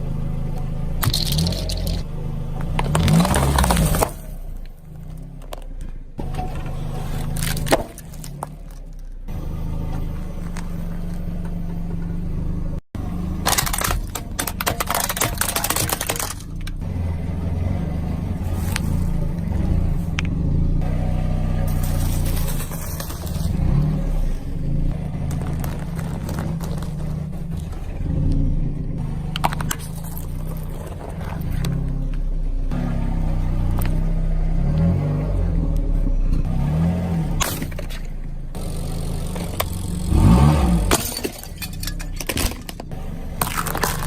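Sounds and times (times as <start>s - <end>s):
car engine running slowly: 0.0s - 44.0s
crackling and crunching under tyres: 0.0s - 44.0s.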